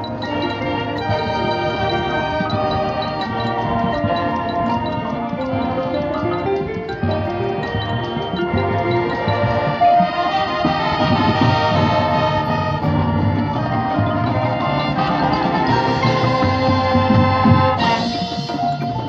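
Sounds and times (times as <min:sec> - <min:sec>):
marching band playing: 0:00.0 - 0:19.0.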